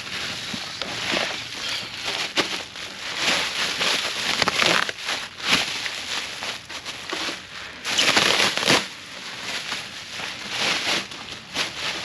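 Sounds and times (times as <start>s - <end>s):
packing material crinkling: 0.0s - 12.0s.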